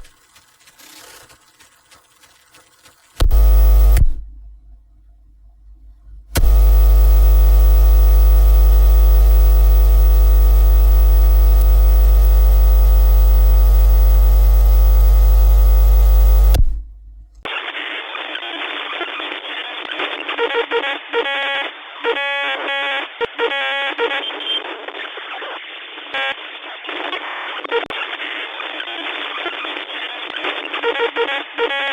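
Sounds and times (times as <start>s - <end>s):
loud steady electrical buzz: 3.1s - 4.3s, 6.2s - 17.4s
static hiss: 6.4s - 16.6s.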